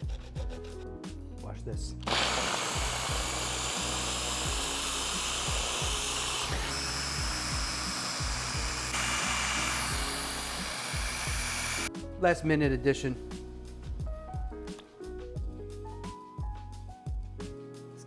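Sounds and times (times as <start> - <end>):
blender motor running: 2.0 - 11.9.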